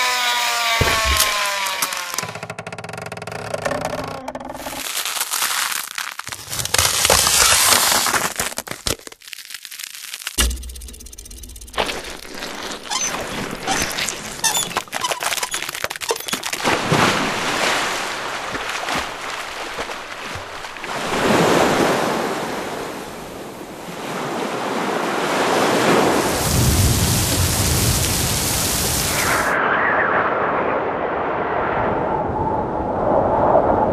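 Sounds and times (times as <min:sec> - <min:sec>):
sharp crackles and clicks: 0:01.1 - 0:16.7
low rumble: 0:10.4 - 0:12.9
rushing noise like surf: 0:24.3 - 0:29.6.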